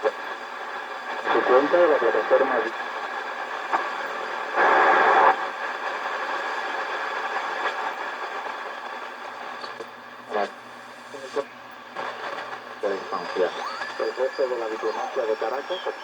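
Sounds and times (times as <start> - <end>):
rush of radio noise: 0.0 - 5.5, 9.4 - 16.0
radio static hiss: 0.0 - 16.0.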